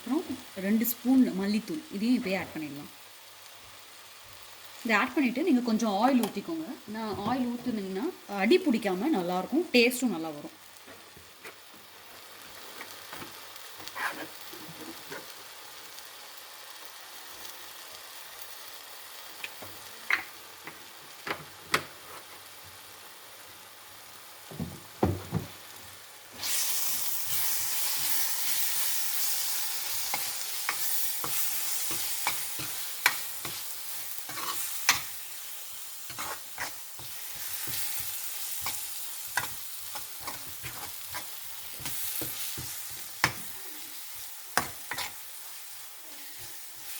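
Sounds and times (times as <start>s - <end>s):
food sizzling in a pan: 0.0s - 46.9s
spoon scraping a pan: 13.8s - 15.4s, 29.2s - 35.2s, 36.0s - 45.2s.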